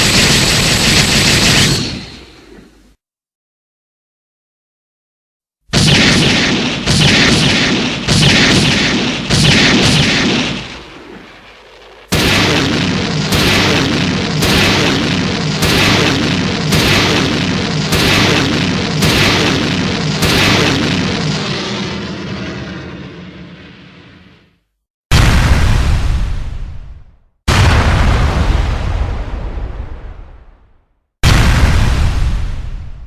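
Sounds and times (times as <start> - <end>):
heavy blasts: 0.0 - 2.8, 5.7 - 24.5.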